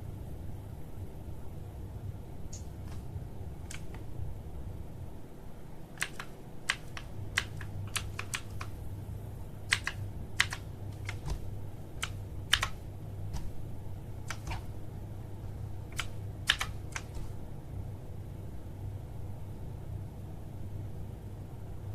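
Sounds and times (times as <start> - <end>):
mechanical keyboard clicks: 3.7 - 4.0, 6.0 - 8.8, 9.7 - 11.4, 12.0 - 12.8, 14.2 - 14.6, 15.9 - 17.2.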